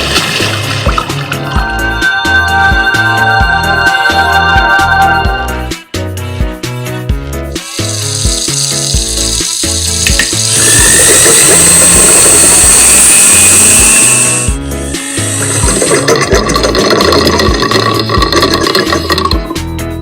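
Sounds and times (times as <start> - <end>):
garbage disposal grinding with water: 0.0 - 1.8, 7.6 - 19.6
music with steady beat: 0.1 - 9.3.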